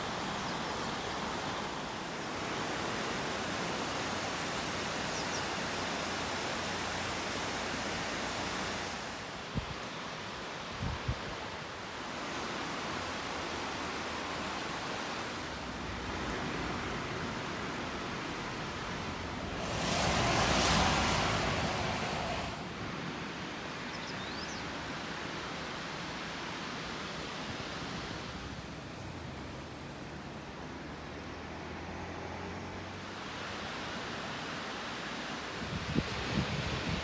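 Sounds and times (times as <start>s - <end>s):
rain falling: 0.0s - 10.4s, 11.6s - 22.9s.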